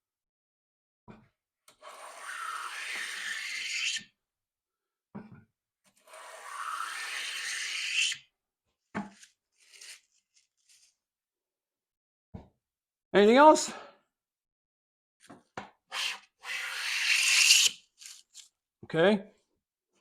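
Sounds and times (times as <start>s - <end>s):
hand plane cutting wood: 1.7s - 4.0s, 6.0s - 8.2s, 15.9s - 18.2s.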